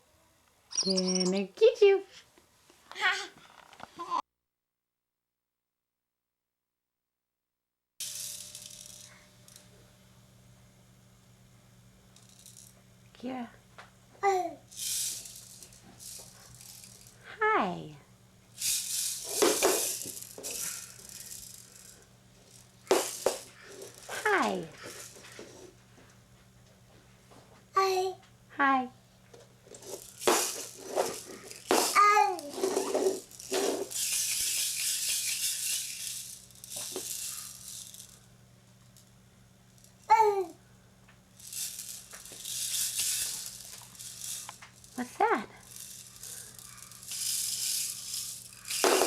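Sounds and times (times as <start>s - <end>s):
small object rattling: 0.7s - 1.4s, 12.2s - 12.8s, 14.7s - 17.2s, 18.6s - 25.6s, 29.7s - 38.2s, 41.4s - 49.0s.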